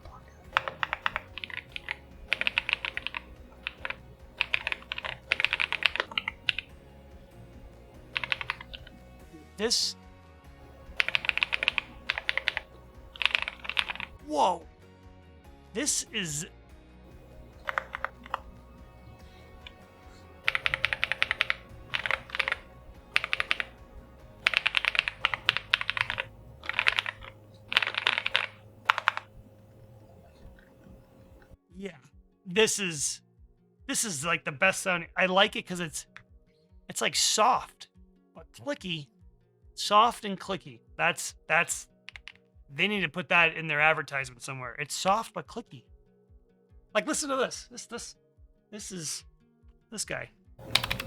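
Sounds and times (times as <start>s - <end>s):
mechanical keyboard typing: 0.5s - 9.0s, 10.8s - 14.2s, 17.1s - 31.6s, 42.1s - 42.4s, 50.6s - 51.0s.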